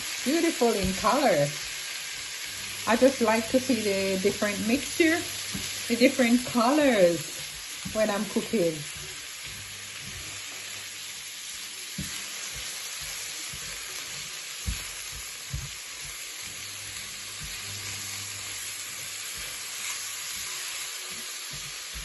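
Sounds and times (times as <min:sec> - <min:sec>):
food sizzling in hot oil: 0:00.0 - 0:22.0
stirring knocks against pan: 0:11.9 - 0:17.7.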